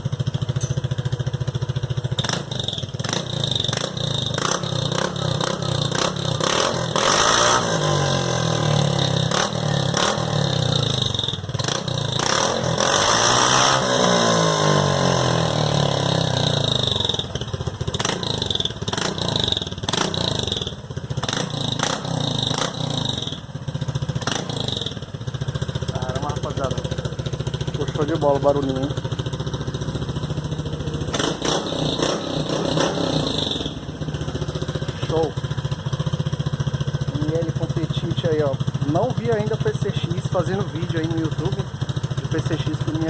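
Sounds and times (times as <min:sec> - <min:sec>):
scooter engine revving: 0:00.0 - 0:43.0
exhaust pops and cracks: 0:31.0 - 0:32.1.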